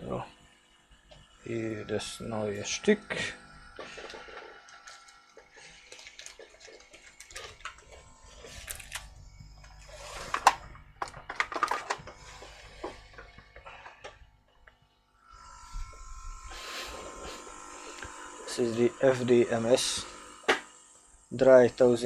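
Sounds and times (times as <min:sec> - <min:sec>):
small parts and tools clicking: 0:01.0 - 0:16.1.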